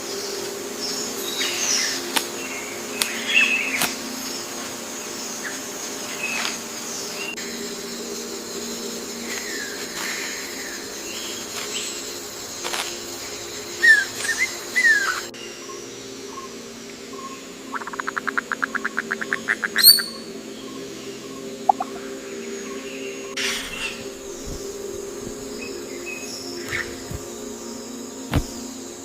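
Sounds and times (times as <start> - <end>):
steady high hum: 0.0 - 29.0
bird chirps: 13.8 - 27.3.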